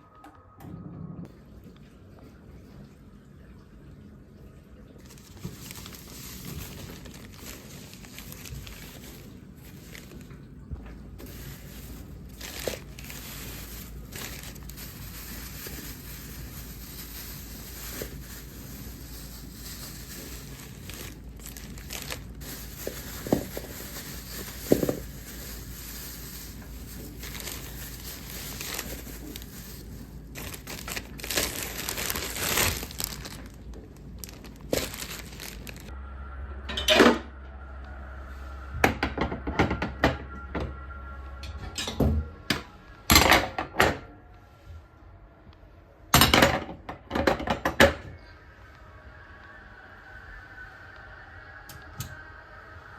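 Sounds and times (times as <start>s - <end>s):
objects knocking and clattering: 46.2s - 48.1s.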